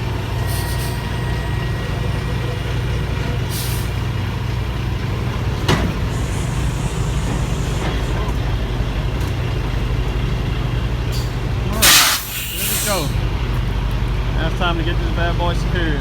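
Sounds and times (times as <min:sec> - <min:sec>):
diesel truck engine idling: 0:00.0 - 0:16.0
air hiss: 0:05.8 - 0:08.2, 0:11.2 - 0:13.1.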